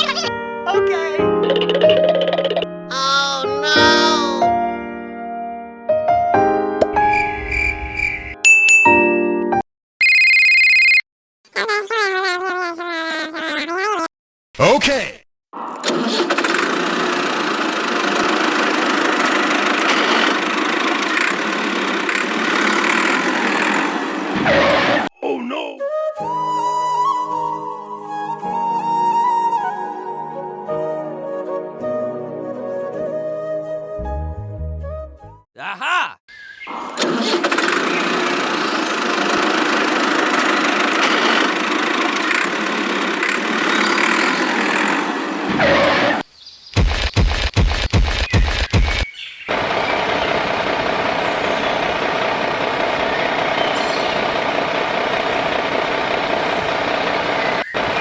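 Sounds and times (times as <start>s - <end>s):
machine motor whirring: 15.8s - 24.3s, 36.9s - 46.2s.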